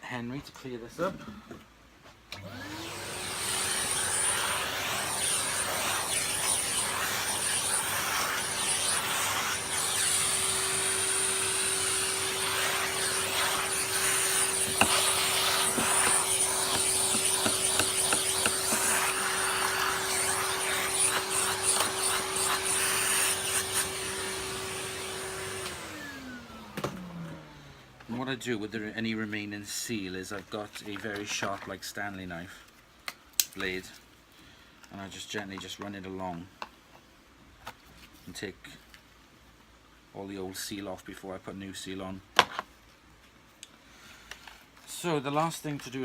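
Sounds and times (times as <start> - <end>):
vacuum cleaner running: 2.3 - 28.0.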